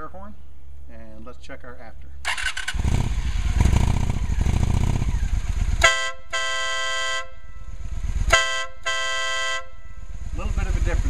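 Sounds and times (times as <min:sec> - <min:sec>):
motorcycle engine idling: 0:02.3 - 0:11.0
motorcycle air horn: 0:05.6 - 0:10.2.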